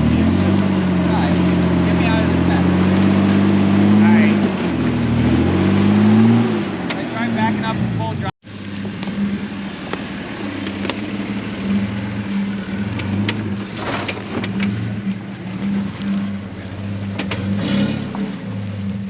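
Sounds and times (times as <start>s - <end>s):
engine running at low revs: 0.0s - 19.0s
tyres grinding over stones: 8.6s - 15.0s.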